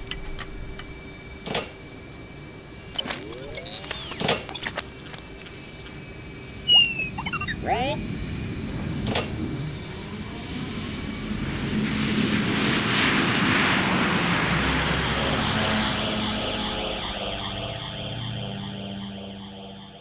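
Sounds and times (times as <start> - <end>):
sharp click: 0.0 - 6.3.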